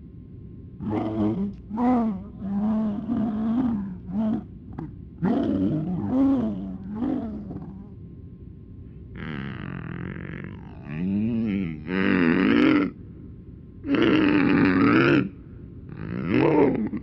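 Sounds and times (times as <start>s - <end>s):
garbled voice groaning: 0.8s - 8.0s, 9.2s - 13.0s, 13.8s - 17.0s.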